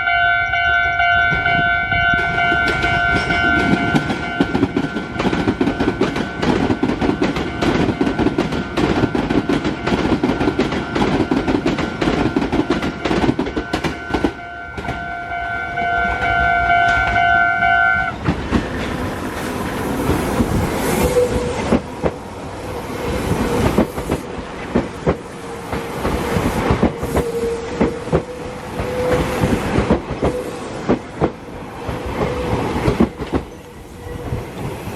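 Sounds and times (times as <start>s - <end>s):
crossing warning bell ringing: 0.0s - 19.2s, 26.9s - 34.6s
train wheels clacking on rails: 0.8s - 34.9s.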